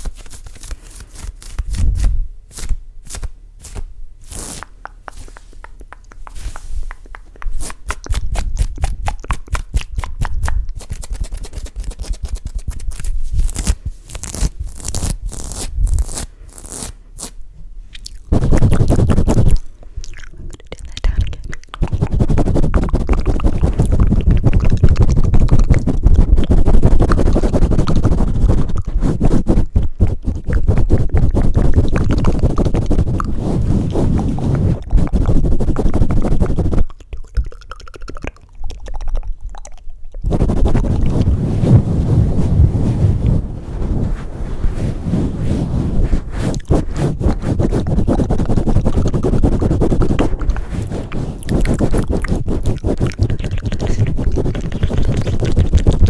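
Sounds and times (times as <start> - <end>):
rubbing against microphone: 0.0 - 17.4, 18.3 - 19.6, 21.1 - 36.9, 40.2 - 56.0
deep rumble: 40.3 - 56.0.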